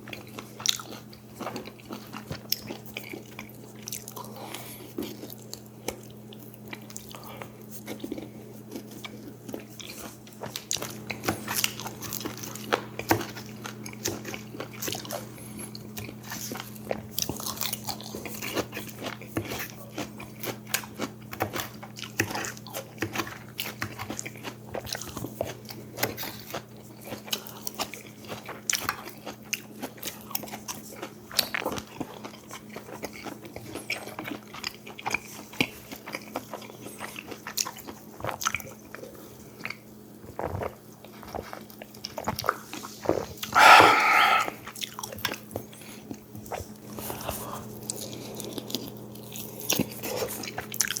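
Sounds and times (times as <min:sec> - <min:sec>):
person chewing and crunching: 0:00.0 - 0:45.6, 0:46.4 - 0:51.0.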